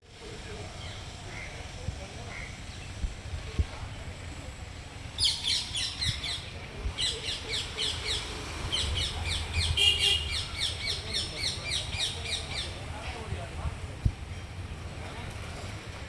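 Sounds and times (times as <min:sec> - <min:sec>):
parrots chirping: 0:07.0 - 0:12.8.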